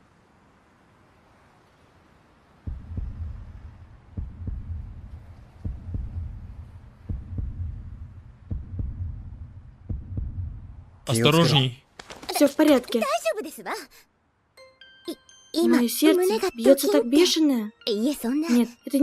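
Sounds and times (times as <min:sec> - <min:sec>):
heartbeat thumps: 0:02.7 - 0:11.0.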